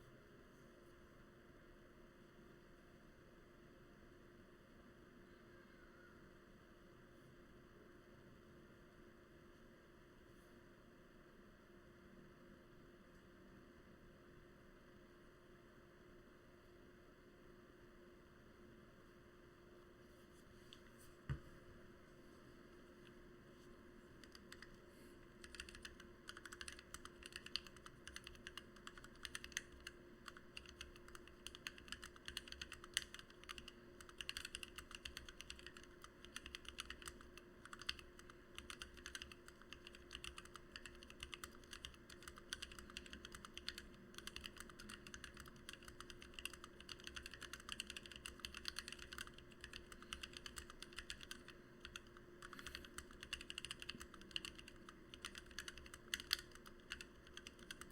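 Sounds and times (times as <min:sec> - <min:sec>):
rapid typing on mechanical keyboard: 0:24.2 - 0:57.9.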